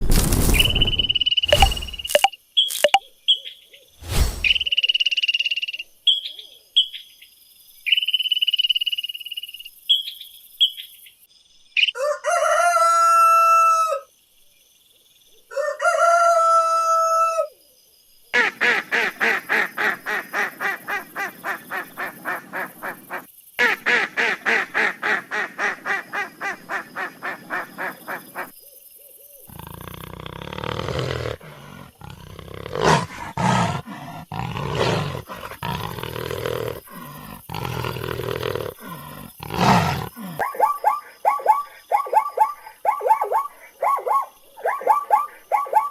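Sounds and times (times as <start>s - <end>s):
rooster crowing: 12.0s - 14.1s, 15.5s - 17.5s.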